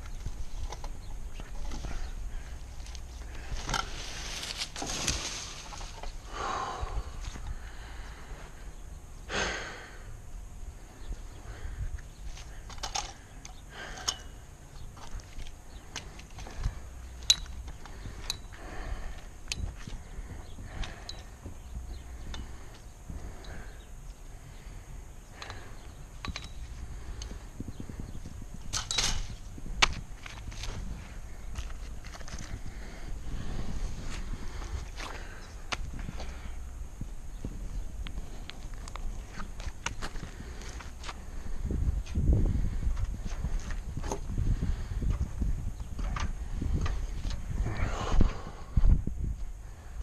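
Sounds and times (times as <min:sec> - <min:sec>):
steady low rumble: 0:00.0 - 0:50.0
person breathing hard: 0:01.8 - 0:04.2, 0:06.1 - 0:10.2, 0:10.8 - 0:14.7, 0:15.7 - 0:26.1, 0:30.7 - 0:37.0, 0:40.0 - 0:43.3, 0:44.3 - 0:45.4, 0:46.4 - 0:50.0.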